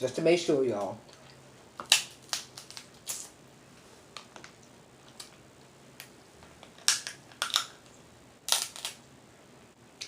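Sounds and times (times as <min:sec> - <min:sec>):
crab shell cracking: 0:01.8 - 0:03.3, 0:06.0 - 0:07.9, 0:08.5 - 0:09.0.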